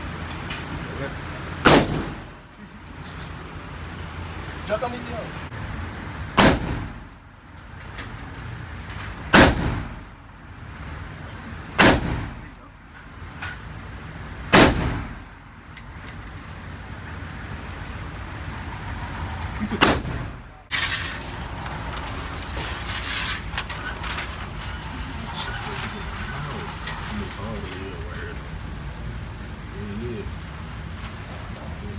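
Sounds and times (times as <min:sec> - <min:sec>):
loud gunshots with echo: 0:01.7 - 0:02.3, 0:06.4 - 0:07.0, 0:09.3 - 0:10.0, 0:11.8 - 0:12.4, 0:14.5 - 0:15.2.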